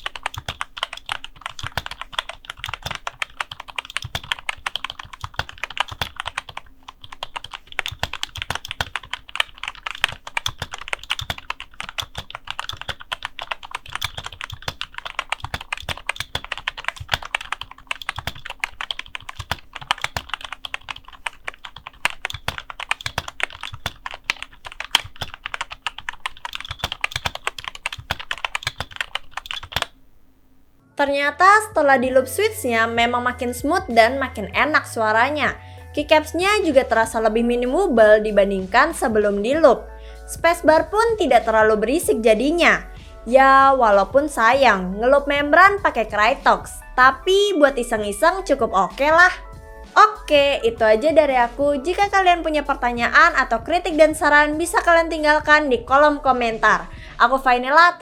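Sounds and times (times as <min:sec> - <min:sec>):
keyboard typing: 0:00.0 - 0:30.3, 0:51.4 - 0:55.6.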